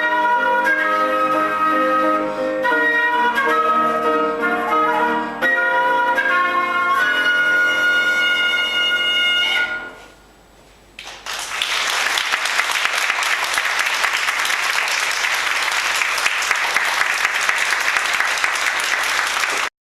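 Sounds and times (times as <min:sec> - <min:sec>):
wind instrument holding a note: 0:00.0 - 0:10.1
audience applause: 0:11.0 - 0:19.7.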